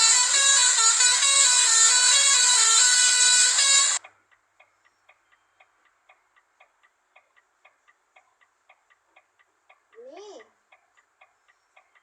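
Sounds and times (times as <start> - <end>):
faint rapid mechanical ticking: 4.0 - 12.0.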